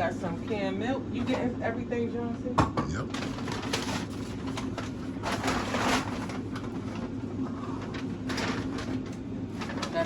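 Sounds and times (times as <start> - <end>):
packaging rustling: 3.1 - 7.1, 7.8 - 10.0.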